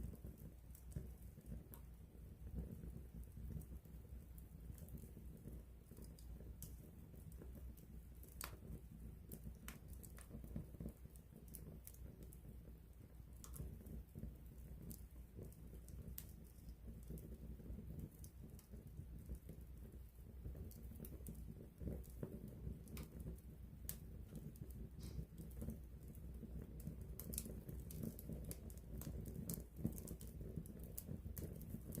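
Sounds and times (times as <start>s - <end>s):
burning wood crackling and popping: 0.0s - 32.0s
campfire flame rumble: 0.0s - 32.0s.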